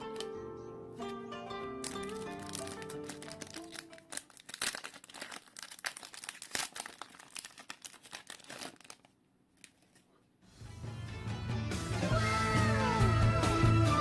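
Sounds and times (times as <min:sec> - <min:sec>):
plastic wrapper crinkling and tearing: 0:01.8 - 0:10.2.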